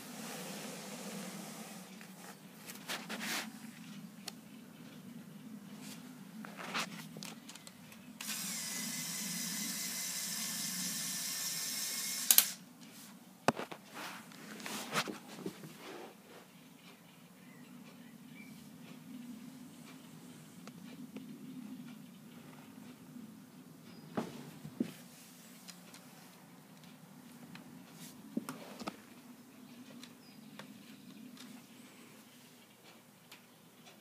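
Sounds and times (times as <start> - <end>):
plastic parts clicking and rattling: 7.1 - 8.0
small electric motor whirring: 8.2 - 12.6
motor stop click: 12.0 - 12.6.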